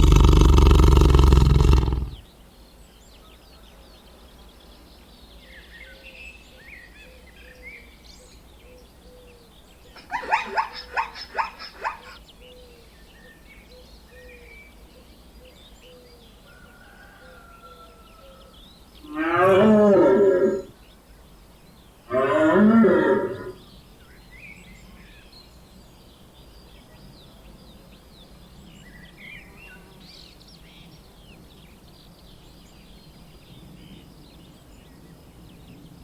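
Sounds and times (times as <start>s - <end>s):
loud low animal call: 0.0s - 2.2s, 19.0s - 20.7s, 22.1s - 23.6s
short animal calls: 0.0s - 2.2s.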